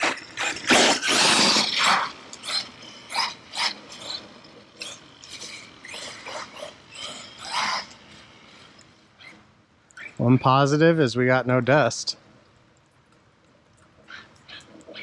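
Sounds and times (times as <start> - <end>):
rc truck whirring bursts: 0.0 - 10.4.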